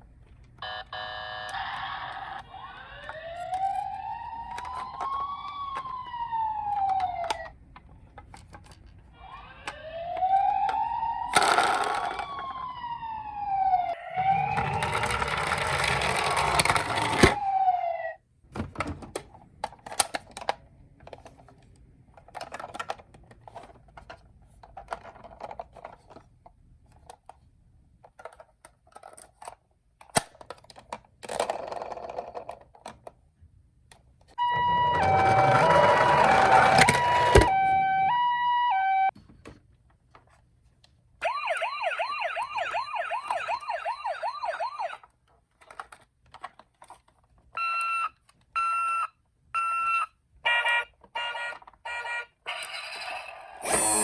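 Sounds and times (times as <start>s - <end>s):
toy siren wailing: 0.6s - 7.5s, 9.2s - 18.2s, 34.4s - 39.1s, 41.2s - 45.0s, 49.6s - 54.0s
plastic toy cars clicking and rattling: 1.4s - 12.7s, 14.3s - 17.4s, 18.7s - 34.4s, 42.8s - 47.6s, 50.5s - 54.0s
rough rolling noise: 34.6s - 37.4s.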